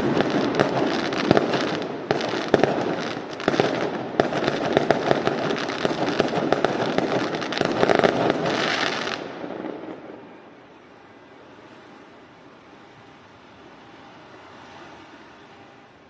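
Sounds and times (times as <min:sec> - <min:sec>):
fireworks banging and crackling: 0:00.0 - 0:10.5.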